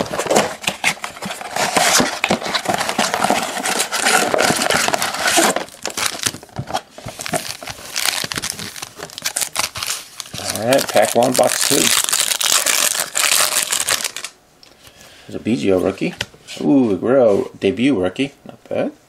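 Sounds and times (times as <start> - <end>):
plastic wrapping crinkling: 0.0 - 14.4.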